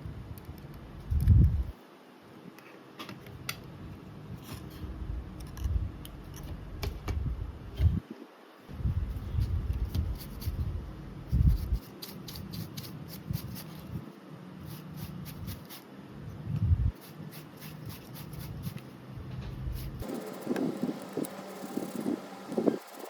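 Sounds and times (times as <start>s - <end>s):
rubbing and handling: 17.0s - 19.0s.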